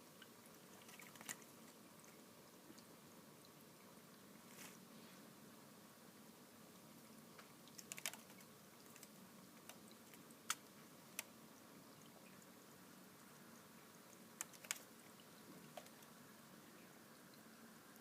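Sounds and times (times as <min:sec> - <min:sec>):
faint hum: 0:00.0 - 0:18.0
bird splashing in water: 0:00.5 - 0:01.7, 0:14.0 - 0:16.0.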